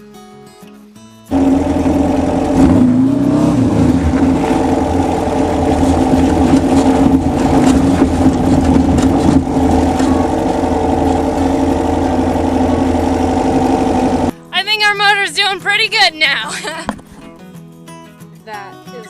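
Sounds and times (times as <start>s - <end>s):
engine running loud under load: 1.3s - 14.3s.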